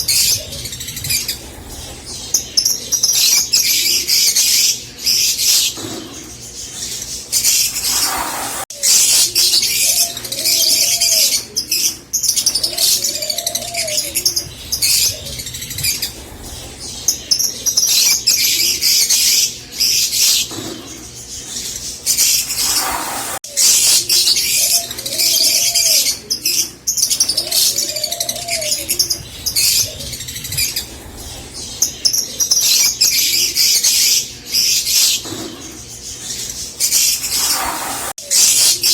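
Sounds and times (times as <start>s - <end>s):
lovebirds high-pitched chattering: 0.0s - 38.9s
soft rising-and-falling bird calls: 22.1s - 30.0s.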